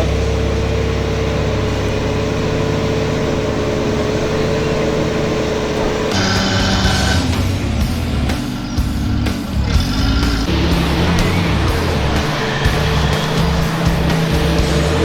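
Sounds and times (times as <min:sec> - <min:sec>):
vehicle engine running with whine: 0:00.0 - 0:15.0
music: 0:06.1 - 0:15.0.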